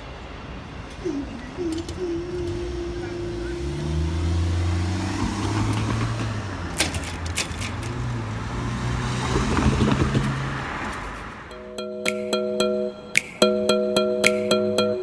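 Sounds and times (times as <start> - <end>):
vehicle engine running: 1.6 - 11.5
sharp clicks: 5.8 - 8.1
music: 11.5 - 15.0.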